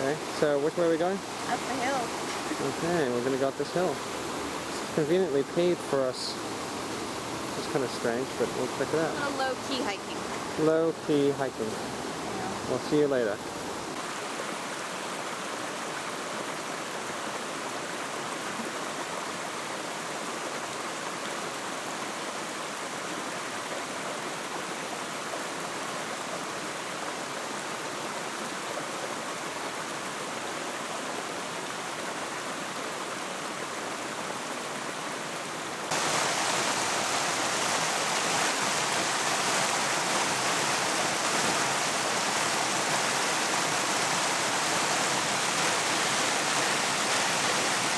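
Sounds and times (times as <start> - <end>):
rushing mountain stream: 0.0 - 47.9.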